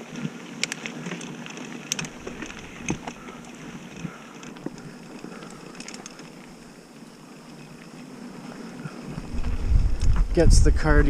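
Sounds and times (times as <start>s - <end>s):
bike clicks and rattles: 0.0s - 7.0s
bike tyres on dirt trail: 0.0s - 11.0s
wind: 0.0s - 11.0s.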